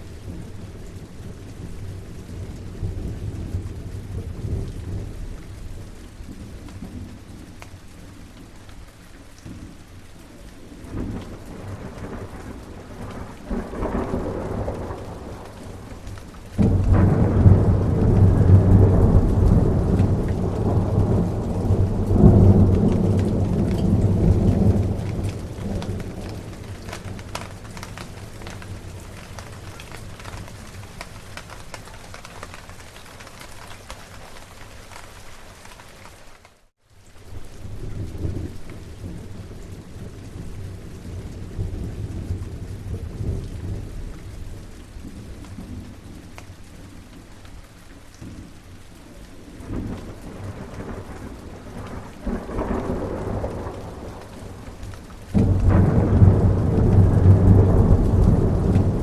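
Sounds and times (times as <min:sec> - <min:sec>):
steady rain: 0:00.0 - 0:59.0
thunder rumbling and cracking: 0:10.6 - 0:33.9, 0:37.6 - 0:47.2, 0:49.4 - 0:59.0.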